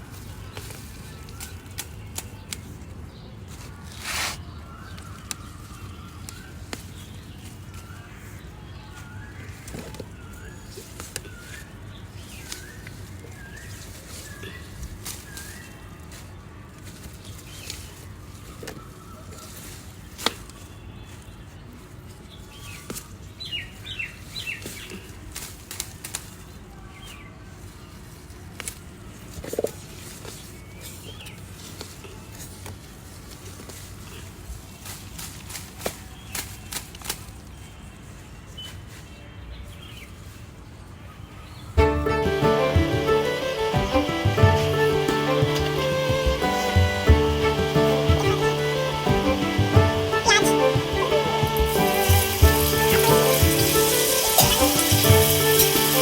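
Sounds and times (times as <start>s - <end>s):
birds chirping: 41.6s - 56.0s
short burst of hiss: 41.8s - 56.0s.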